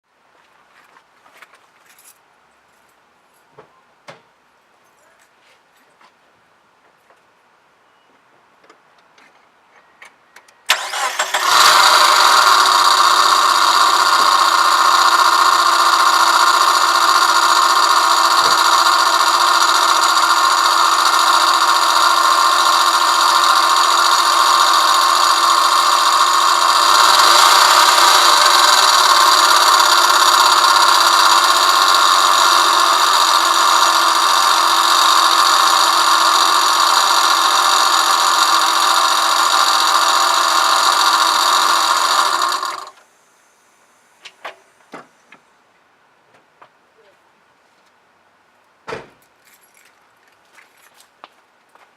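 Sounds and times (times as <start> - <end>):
loud noise from cylinder head: 10.7 - 43.0
car engine starting and running: 10.7 - 43.1.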